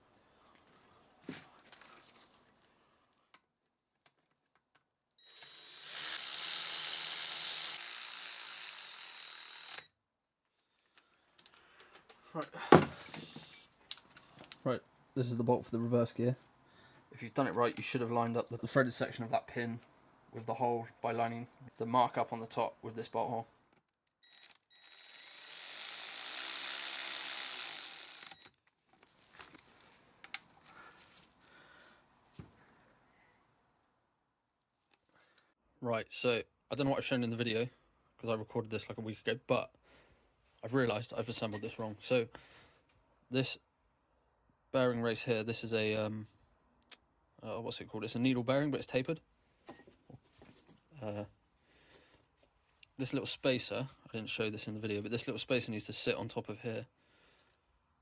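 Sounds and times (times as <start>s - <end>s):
ratchet wrench clicking: 5.2s - 9.8s, 24.3s - 28.5s.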